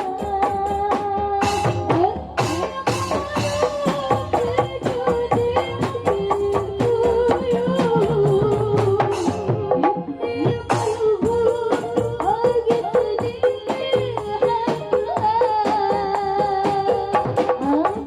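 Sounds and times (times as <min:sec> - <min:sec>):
frame drums and hand drums: 0:00.0 - 0:18.0.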